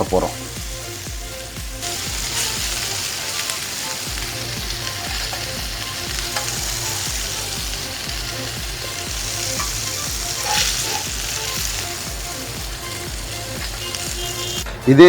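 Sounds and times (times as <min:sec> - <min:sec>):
fish sizzling in oil: 0:00.0 - 0:14.7
metal spatula scraping: 0:09.1 - 0:11.6.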